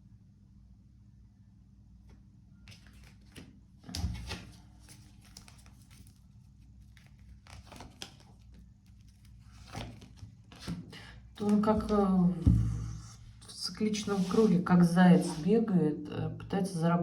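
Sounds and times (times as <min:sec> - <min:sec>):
cards rustling and clicking: 0:02.7 - 0:12.1.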